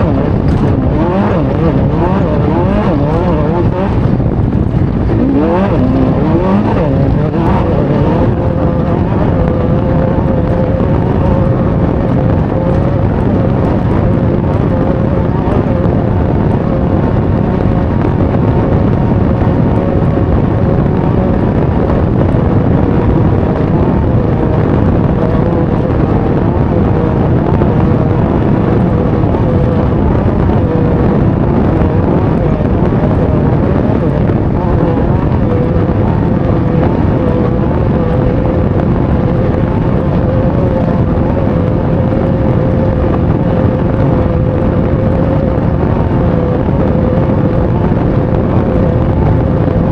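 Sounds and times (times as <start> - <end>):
race vehicle engine running hard: 0.0 - 49.9
wind noise on microphone: 0.0 - 49.9.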